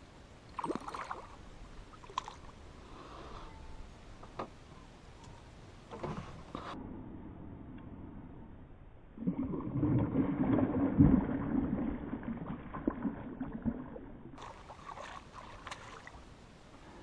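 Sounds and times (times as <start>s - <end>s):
water splashing around a canoe: 0.5s - 2.6s, 9.2s - 16.4s.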